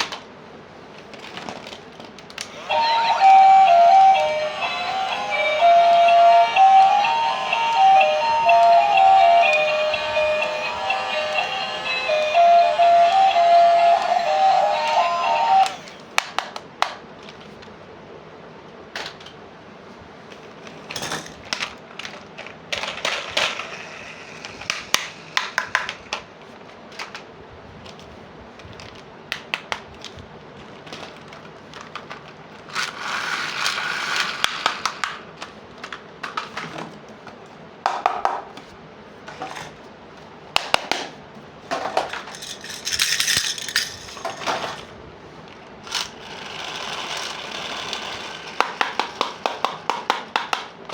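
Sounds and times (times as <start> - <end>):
plastic toy pieces clicking: 42.0 - 44.6.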